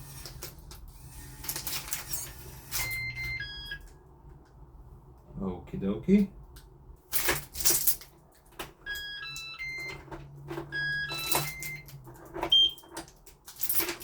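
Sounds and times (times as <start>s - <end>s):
high electronic beep: 2.8s - 3.8s, 8.9s - 10.0s, 10.8s - 11.9s
electronic lock chimes: 2.8s - 3.9s, 8.9s - 10.1s, 10.7s - 12.9s.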